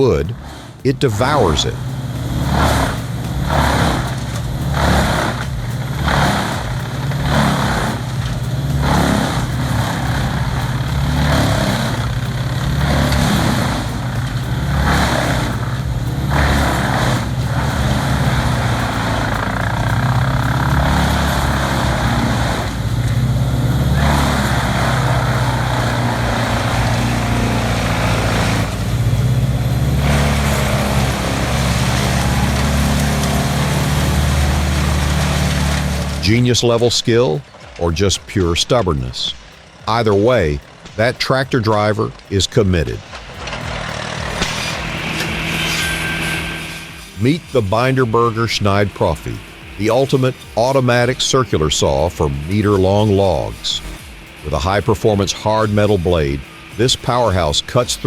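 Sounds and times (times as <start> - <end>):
wood chipper engine drone: 0.0 - 58.0
wood chipping noise: 0.0 - 58.0.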